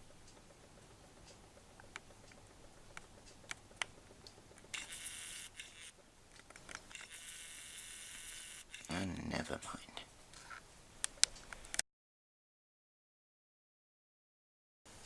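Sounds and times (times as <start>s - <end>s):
lens zoom motor whirring: 4.7s - 6.0s, 6.9s - 8.9s.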